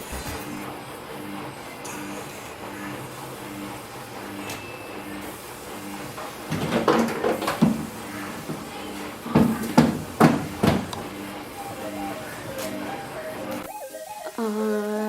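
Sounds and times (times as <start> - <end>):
sharp knocks and thuds: 6.5 - 8.7, 9.3 - 11.0.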